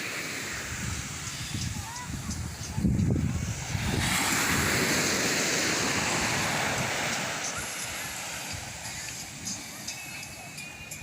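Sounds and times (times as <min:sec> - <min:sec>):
sea wave rushing in: 0:03.3 - 0:09.9.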